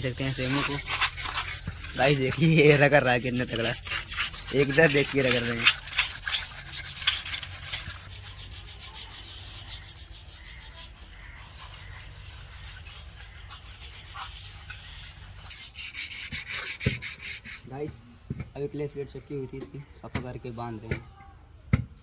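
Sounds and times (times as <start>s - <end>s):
rubbing scraping metal plate: 0.0s - 19.3s.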